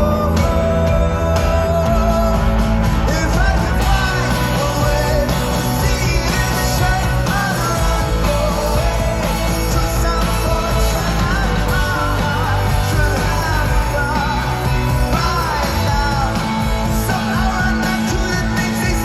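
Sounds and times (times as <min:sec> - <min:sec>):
lead singer singing: 0:00.0 - 0:19.0
rock band playing live: 0:00.0 - 0:19.0
steady bass: 0:00.0 - 0:19.0.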